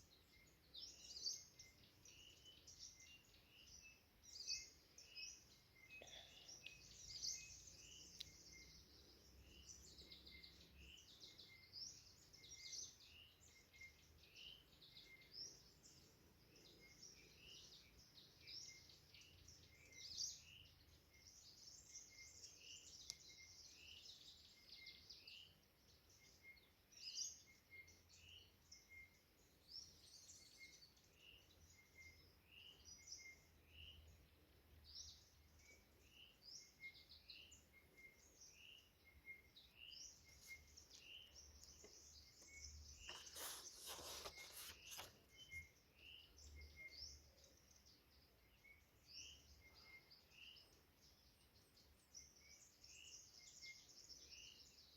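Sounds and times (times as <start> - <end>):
birds singing and twittering: 0.0 - 54.9.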